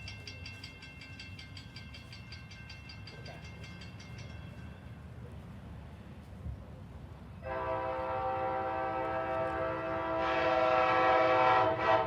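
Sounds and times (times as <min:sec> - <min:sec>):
crossing bell ringing rapidly: 0:00.0 - 0:05.2
passing train rumble: 0:00.0 - 0:12.0.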